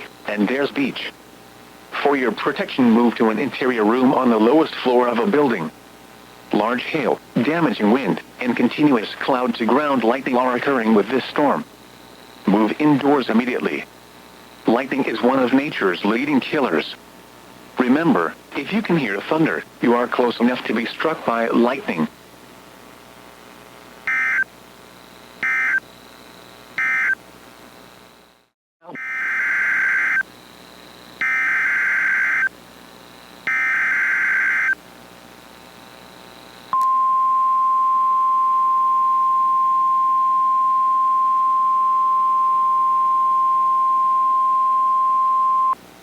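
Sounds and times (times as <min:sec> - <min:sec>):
buzzy data bursts: 0:24.0 - 0:27.2, 0:29.0 - 0:36.7
steady warning alarm tone: 0:24.1 - 0:24.5, 0:25.4 - 0:25.8, 0:26.8 - 0:27.2, 0:28.9 - 0:30.3, 0:31.2 - 0:32.5, 0:33.4 - 0:34.8, 0:36.8 - 0:45.8.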